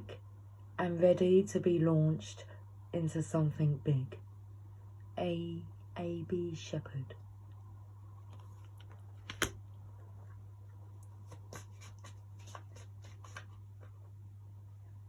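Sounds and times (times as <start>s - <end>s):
steady low hum: 0.0s - 15.0s
cards clicking and tapping: 8.3s - 9.6s.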